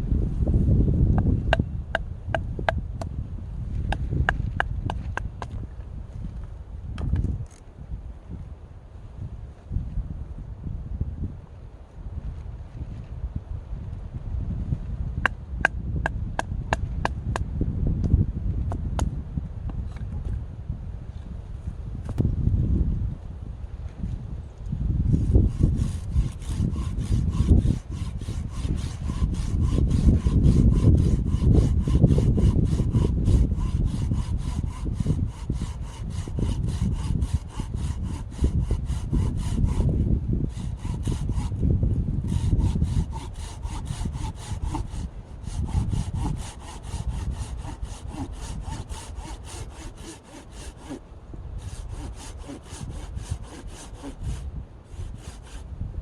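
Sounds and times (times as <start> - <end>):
hand saw cutting wood: 25.1 - 51.0, 51.6 - 55.7.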